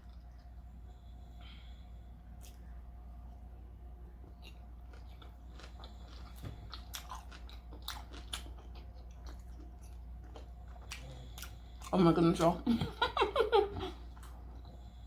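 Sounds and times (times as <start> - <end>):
chewing crunchy food: 4.2 - 12.5, 13.9 - 15.0.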